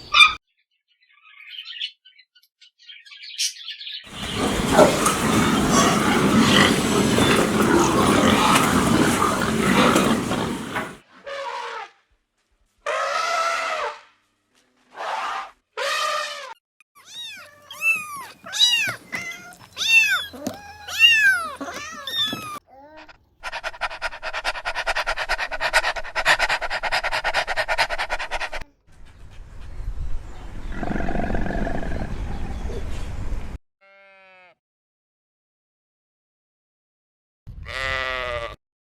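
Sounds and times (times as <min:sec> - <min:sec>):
low rough animal call: 0:04.1 - 0:11.0, 0:30.6 - 0:32.9
drawn-out pitched animal cries: 0:04.1 - 0:11.9, 0:15.0 - 0:22.6, 0:33.8 - 0:34.6.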